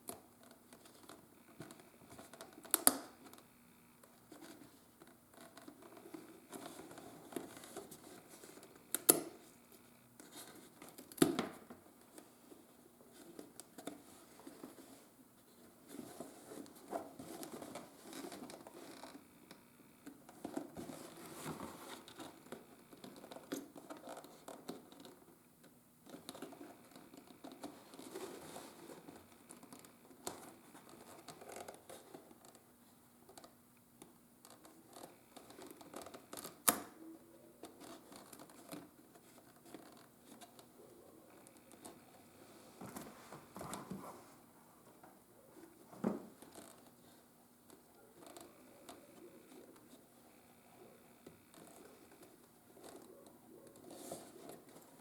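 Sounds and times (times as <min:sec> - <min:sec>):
leather rustling and scraping: 0:42.4 - 0:47.4.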